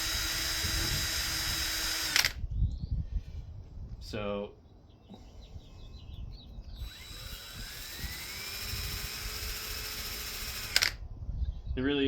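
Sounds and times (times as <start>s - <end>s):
power tool whining: 0.0s - 2.4s, 6.8s - 11.0s.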